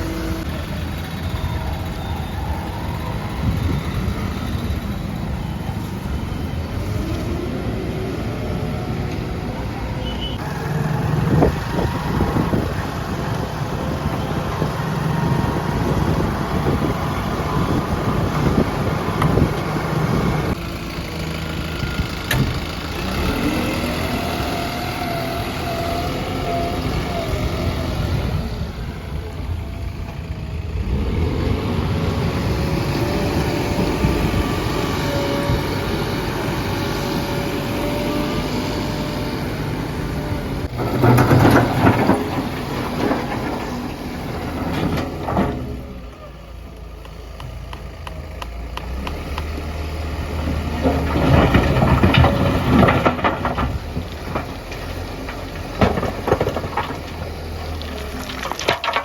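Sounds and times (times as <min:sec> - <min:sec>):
diesel engine running under load: 0:00.0 - 0:59.0.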